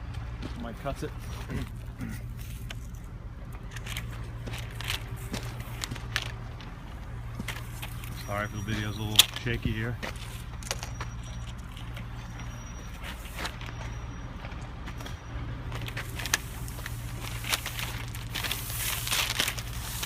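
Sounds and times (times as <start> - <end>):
motor engine humming: 0.0 - 20.0
cable knocking and rustling: 3.6 - 11.1.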